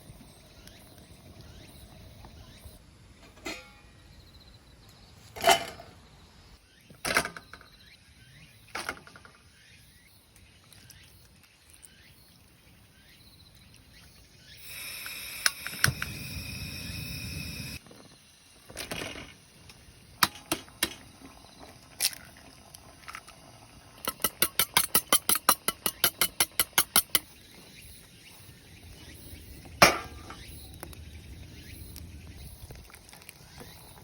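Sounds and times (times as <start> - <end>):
cooking utensils clicking: 24.0 - 27.2.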